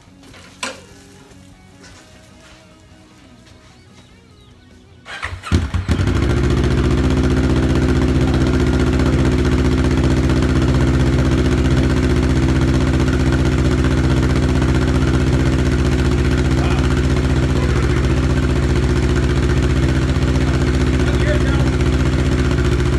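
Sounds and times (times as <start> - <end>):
motorcycle engine idling: 0.0 - 22.9
motorcycle starter cranking: 0.1 - 1.1, 5.0 - 22.9.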